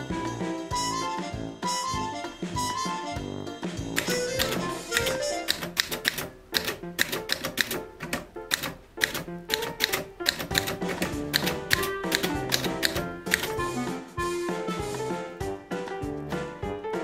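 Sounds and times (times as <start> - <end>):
background music: 0.0 - 17.0
typewriter keys clacking: 4.0 - 13.6.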